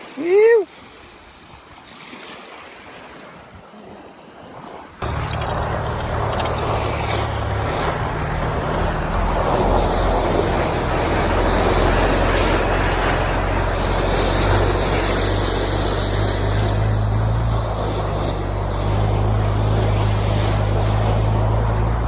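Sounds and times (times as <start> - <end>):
rushing wind or water: 0.0 - 22.0
steady engine hum: 5.0 - 22.0.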